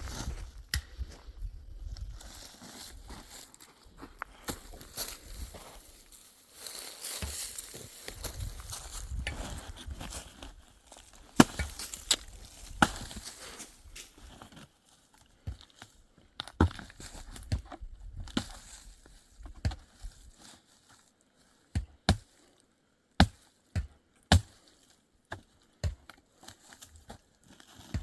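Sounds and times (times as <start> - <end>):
dry wood cracking: 11.0 - 13.3.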